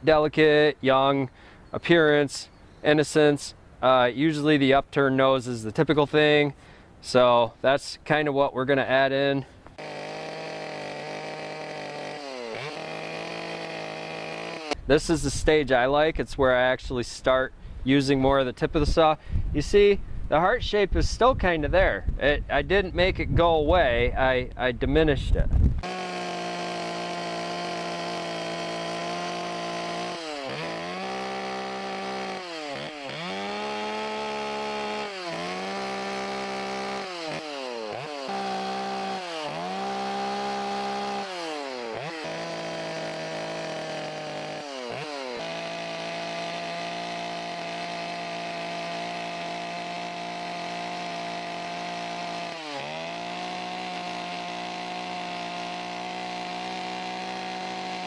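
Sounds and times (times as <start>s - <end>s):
chainsaw carving wood: 9.7s - 14.8s, 25.8s - 58.0s.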